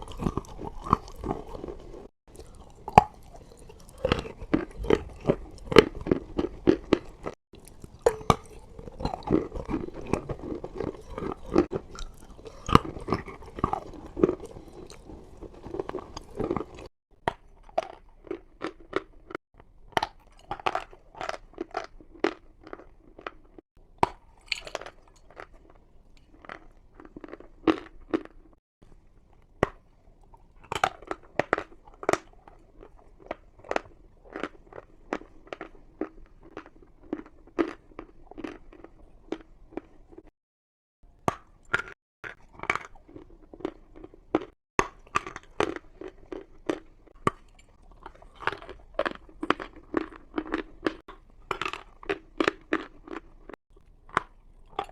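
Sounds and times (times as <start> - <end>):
chalk crunching being chewed: 0.0 - 19.4, 30.2 - 40.3, 41.7 - 54.9.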